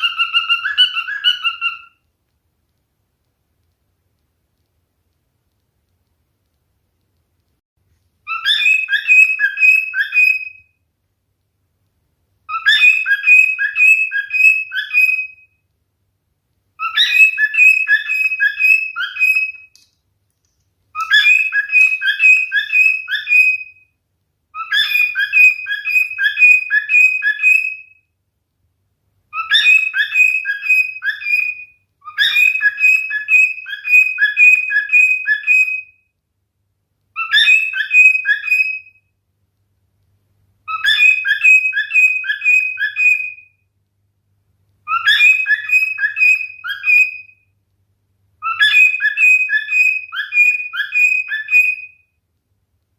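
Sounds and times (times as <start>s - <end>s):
cockatiel whistling: 0.0s - 2.0s, 8.3s - 10.7s, 12.5s - 15.5s, 16.8s - 19.8s, 21.0s - 23.9s, 24.5s - 28.0s, 29.3s - 36.0s, 37.2s - 39.0s, 40.7s - 43.6s, 44.8s - 47.5s, 48.4s - 52.1s.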